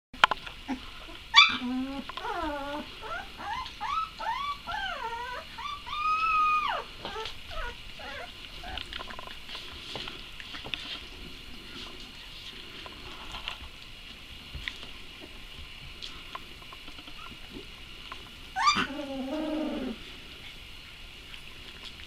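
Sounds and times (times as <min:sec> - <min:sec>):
dog yelping: 0:00.7 - 0:08.8, 0:18.6 - 0:19.4
dog whining: 0:00.7 - 0:08.9, 0:18.5 - 0:20.0.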